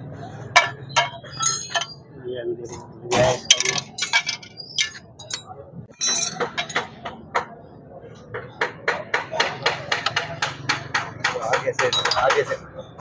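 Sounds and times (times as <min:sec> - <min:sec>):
metallic taps and clinks: 0:00.6 - 0:02.0, 0:02.7 - 0:07.6, 0:09.6 - 0:12.5.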